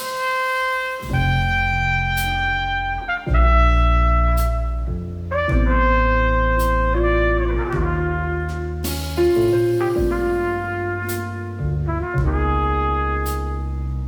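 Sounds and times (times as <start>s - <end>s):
double bass: 0.0s - 14.0s
drums: 0.0s - 14.0s
piano: 0.0s - 14.0s
trumpet melody: 0.0s - 14.0s
cymbal crashes: 8.8s - 10.5s.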